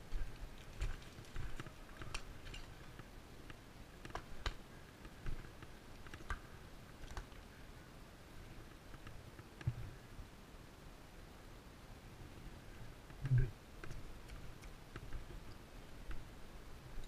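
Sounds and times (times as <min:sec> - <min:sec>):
footsteps: 0:00.0 - 0:03.0.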